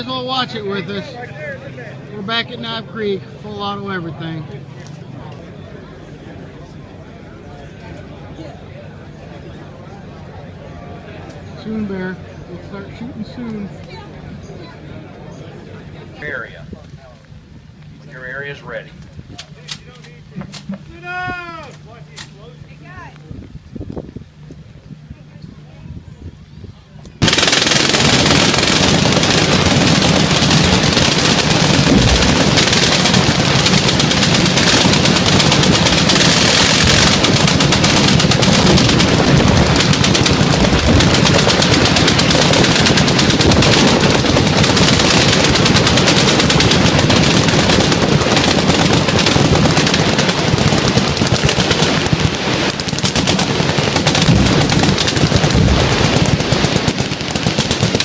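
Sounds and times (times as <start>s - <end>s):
massed machine-gun fire: 27.2s - 58.0s.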